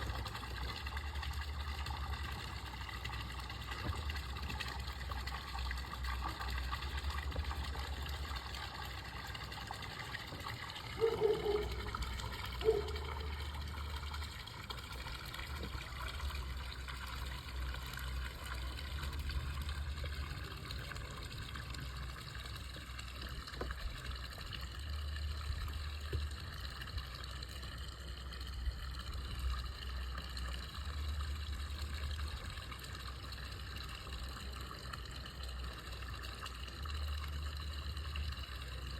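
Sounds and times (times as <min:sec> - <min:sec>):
water trickling and gurgling: 0:00.0 - 0:38.9.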